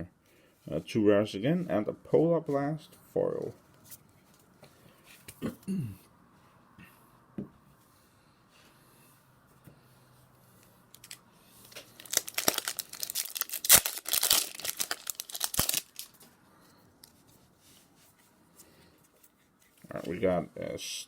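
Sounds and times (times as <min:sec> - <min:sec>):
foil wrapper tearing and crinkling: 0:11.0 - 0:16.2.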